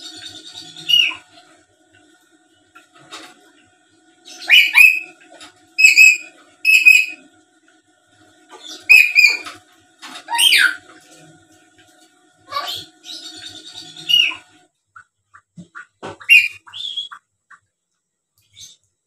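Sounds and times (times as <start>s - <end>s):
parrot harsh squawking calls: 0.8s - 1.4s, 4.3s - 5.2s, 5.8s - 7.2s, 8.7s - 9.6s, 10.2s - 10.9s, 12.5s - 14.6s, 16.2s - 17.2s.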